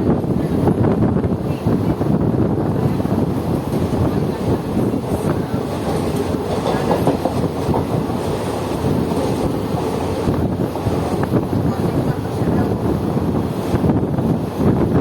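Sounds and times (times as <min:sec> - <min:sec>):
train wheels clattering on rails: 0:02.8 - 0:12.8.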